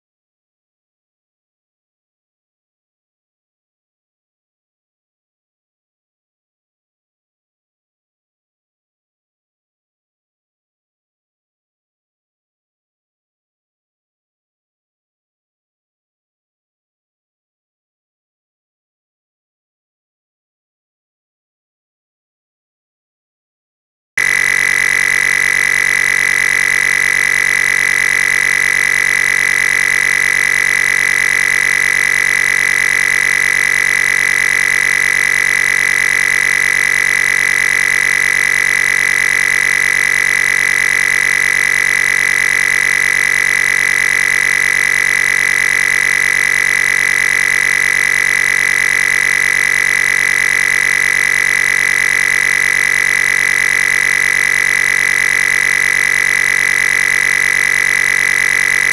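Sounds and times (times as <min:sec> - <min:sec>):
loud electronic buzz: 0:24.2 - 0:58.9.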